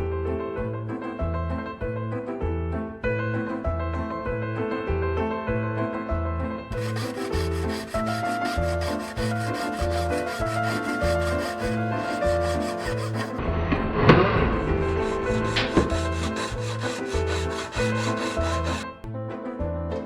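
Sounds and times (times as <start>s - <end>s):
rubbing strokes on metal bracelet: 6.7s - 13.4s, 14.8s - 18.8s
scraping: 6.7s - 13.4s, 14.7s - 18.9s.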